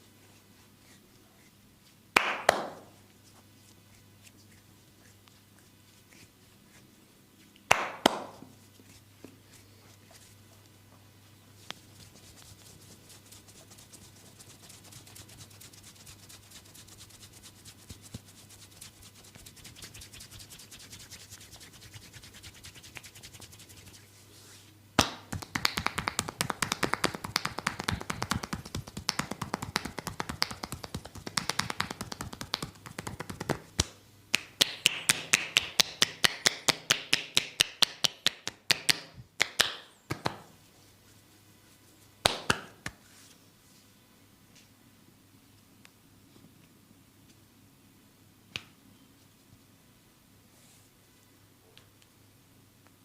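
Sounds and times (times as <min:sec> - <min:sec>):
hands slapping body: 0:02.2 - 0:02.9, 0:07.7 - 0:08.5, 0:25.0 - 0:40.5, 0:42.2 - 0:43.0.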